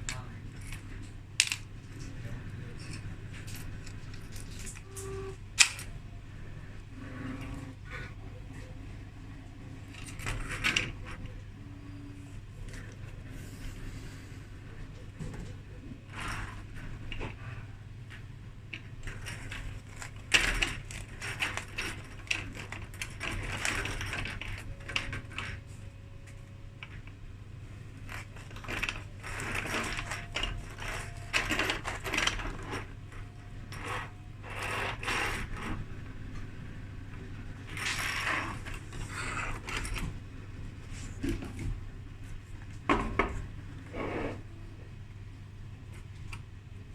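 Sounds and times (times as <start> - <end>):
small hard parts clicking and rattling: 0.0 - 6.5, 14.9 - 27.2, 27.9 - 40.2
steady low hum: 0.0 - 46.9.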